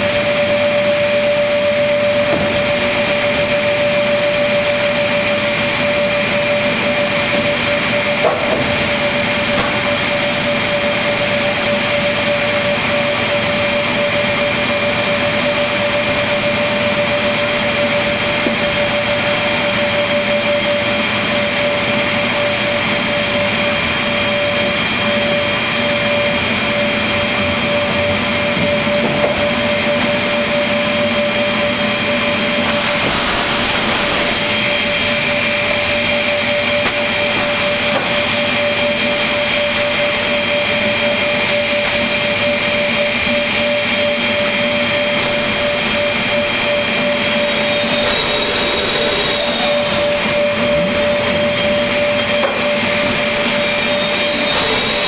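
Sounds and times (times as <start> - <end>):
cutting machine whine: 0.0 - 55.0
mechanical noise: 26.9 - 40.9, 44.2 - 55.0.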